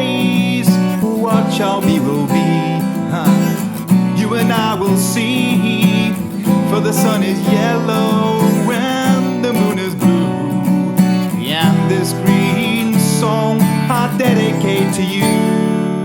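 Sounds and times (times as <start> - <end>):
strummed acoustic guitar: 0.0 - 16.0.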